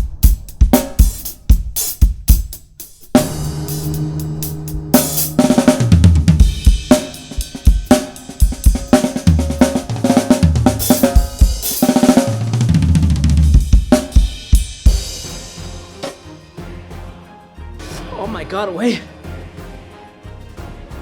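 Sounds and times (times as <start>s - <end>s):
drum kit groove: 0.0s - 16.3s
backing track bass line: 3.1s - 7.6s.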